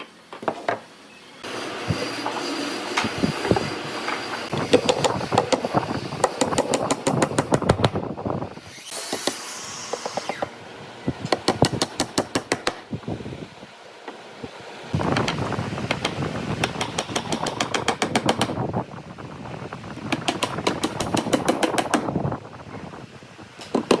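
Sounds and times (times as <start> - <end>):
sharp clicks and knocks on wood: 15.2 - 18.6.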